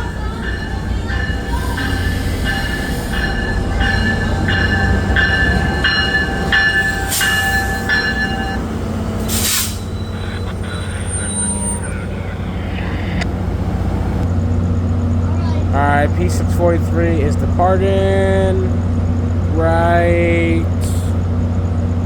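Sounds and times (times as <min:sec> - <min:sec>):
locomotive bell ringing: 0:00.0 - 0:14.1
diesel engine running low: 0:00.0 - 0:22.0
air hiss burst: 0:09.3 - 0:10.0.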